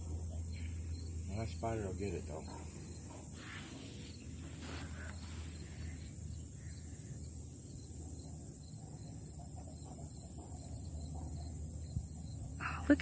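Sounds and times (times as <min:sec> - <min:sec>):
faint rustles: 0:00.0 - 0:07.6
high-pitched hiss: 0:00.0 - 0:09.4
low hum: 0:00.0 - 0:13.0.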